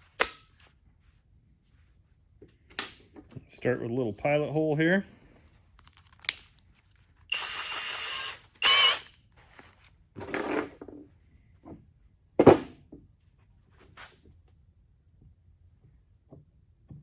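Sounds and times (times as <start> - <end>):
cordless drill whining: 7.3 - 9.2.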